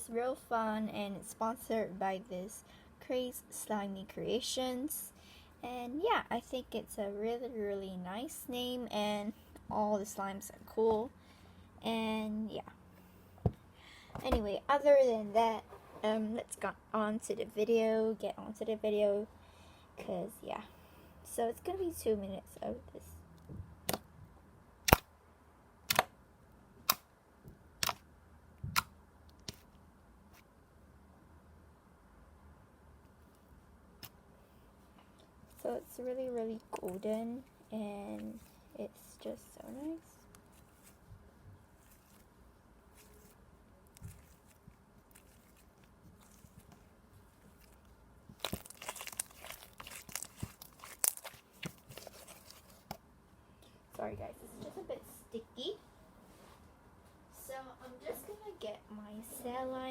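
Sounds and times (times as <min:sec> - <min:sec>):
slime crackling and popping: 0:42.9 - 0:46.8, 0:47.4 - 0:52.8.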